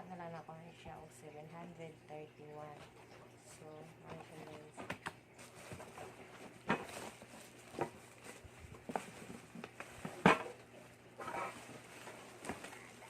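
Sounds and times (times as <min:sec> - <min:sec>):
packaging rustling: 0:04.2 - 0:13.0.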